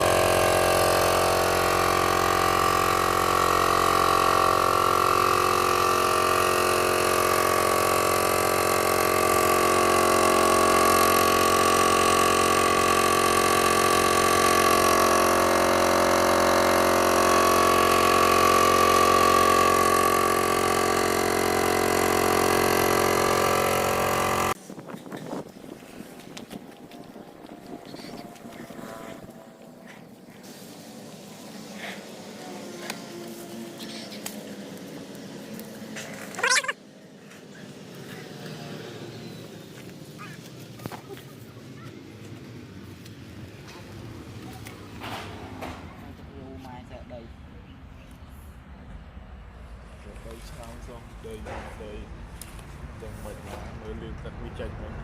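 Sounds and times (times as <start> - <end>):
blower motor drone: 0.0 - 55.0.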